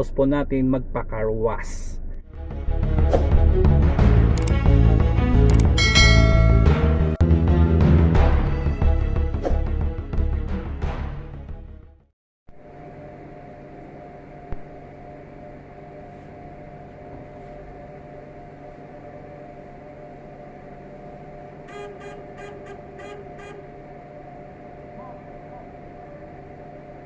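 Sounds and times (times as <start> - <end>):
sharp click: 4.3 - 4.6, 5.5 - 5.8
steady mechanical hum: 12.5 - 27.0.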